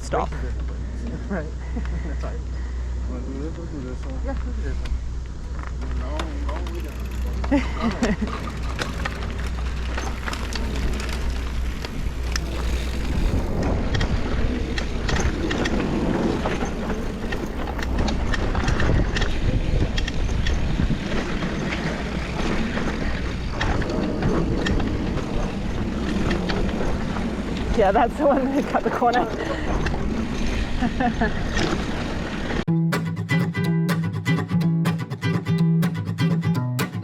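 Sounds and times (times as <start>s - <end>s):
bike rattling and clicking: 4.8s - 32.4s
bike tyres rumbling on dirt: 5.3s - 32.6s
wind buffeting microphone: 6.8s - 32.6s.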